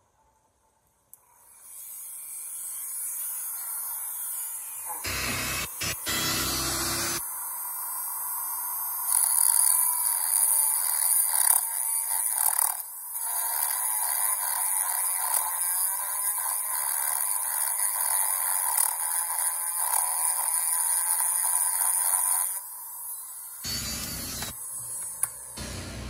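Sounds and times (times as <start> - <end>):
rotary grinder grinding metal: 1.3 - 7.2, 8.2 - 26.0.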